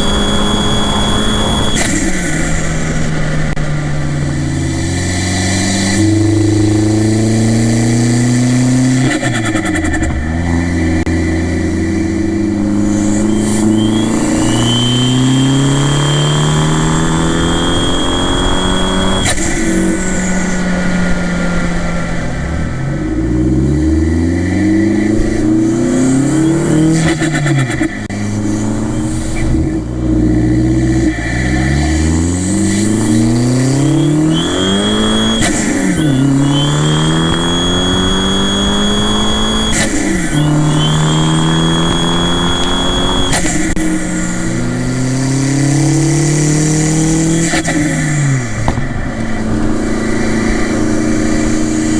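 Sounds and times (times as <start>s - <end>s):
turbo whistle: 0.0s - 3.1s, 12.0s - 20.8s, 25.8s - 27.8s, 31.0s - 44.6s
car engine accelerating: 0.0s - 51.9s
rush of air: 9.7s - 22.6s.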